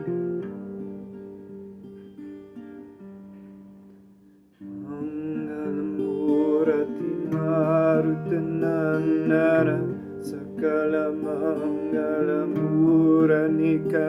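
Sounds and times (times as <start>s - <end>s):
acoustic guitar chords: 0.0s - 14.0s
person singing: 4.7s - 14.0s.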